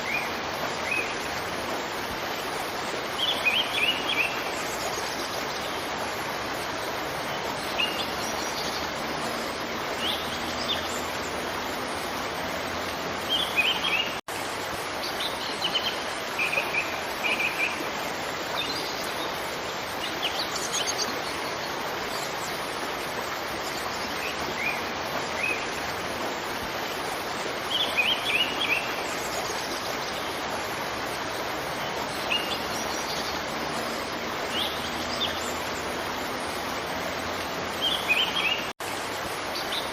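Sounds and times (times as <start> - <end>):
waterfall rushing: 0.0 - 39.9
small birds chirping: 31.2 - 38.7.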